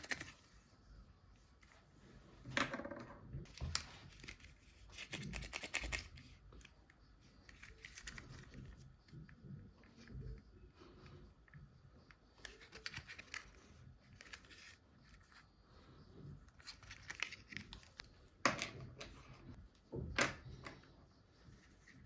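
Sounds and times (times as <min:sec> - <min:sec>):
plastic and paper crinkling: 0:12.4 - 0:15.4, 0:16.5 - 0:18.1.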